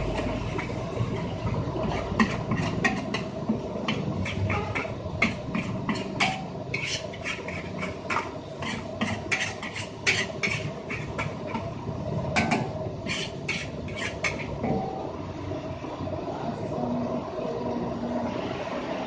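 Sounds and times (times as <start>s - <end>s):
metal spatula scraping wok: 0.0s - 11.8s, 12.4s - 14.8s.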